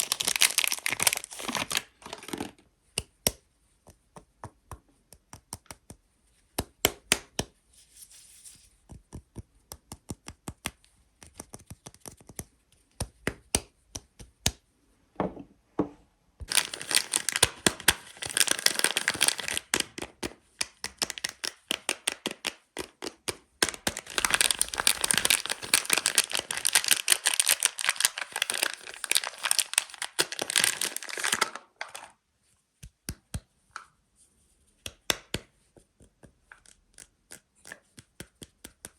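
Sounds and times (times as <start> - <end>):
soap wrapper crinkling and tearing: 0.0 - 2.7, 16.5 - 32.2.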